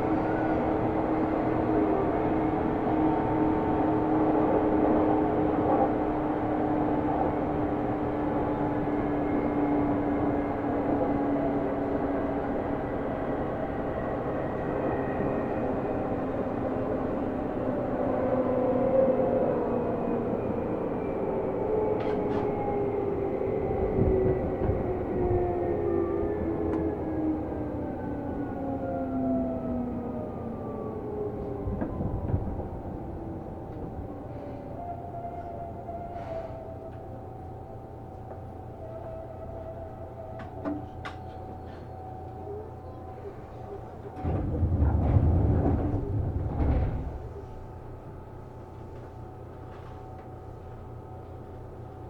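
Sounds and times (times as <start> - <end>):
train wheels rumbling on rail: 0.0 - 52.0
train jolt: 43.6 - 48.6.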